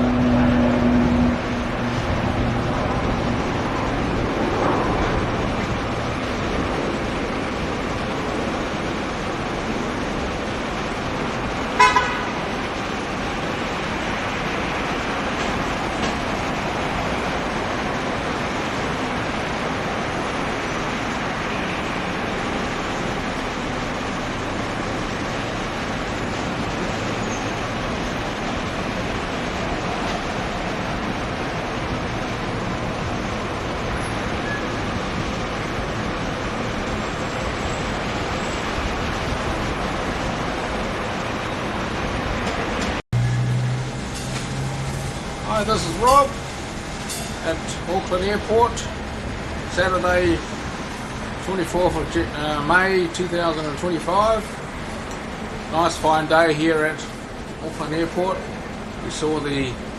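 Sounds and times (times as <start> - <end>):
traffic noise: 0.0 - 59.9
vehicle horn toot: 11.8 - 12.4.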